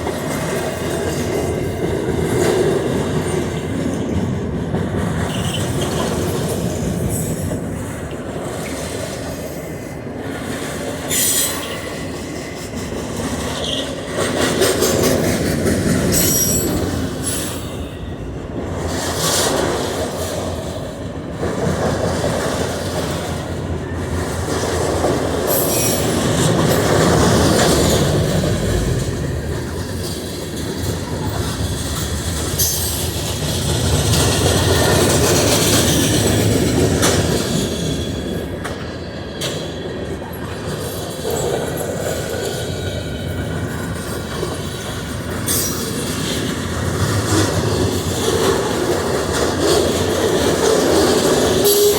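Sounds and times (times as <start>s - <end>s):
train wheels rumbling on rail: 0.0s - 51.9s
wheels clanking over rail joints: 10.4s - 51.9s.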